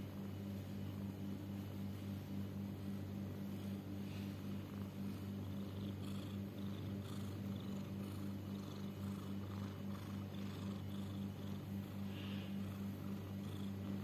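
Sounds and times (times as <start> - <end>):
cat purring breath: 3.5 - 14.0.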